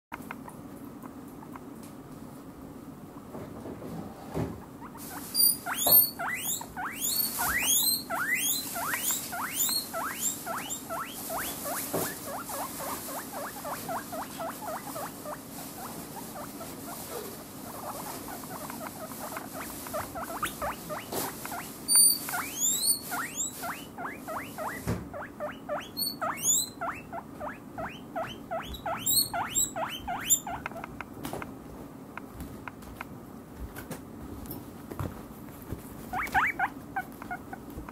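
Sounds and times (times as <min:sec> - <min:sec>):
guinea pigs squealing: 0:00.1 - 0:01.7, 0:04.6 - 0:31.5, 0:36.1 - 0:37.9.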